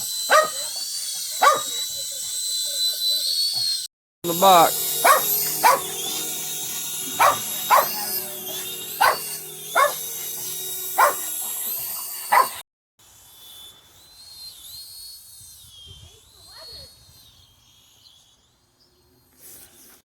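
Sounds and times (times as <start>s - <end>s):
dog barking: 0.3s - 0.7s, 1.4s - 1.8s, 5.0s - 6.2s, 7.2s - 10.0s, 11.0s - 11.3s, 12.3s - 12.6s
high-pitched whine: 4.3s - 12.6s.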